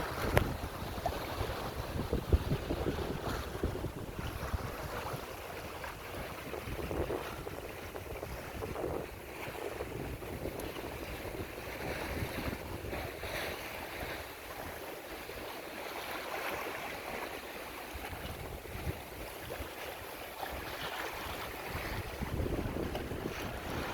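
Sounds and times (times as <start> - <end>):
wind buffeting microphone: 0.0 - 14.8, 17.9 - 23.9
water rushing along hull: 0.0 - 23.9.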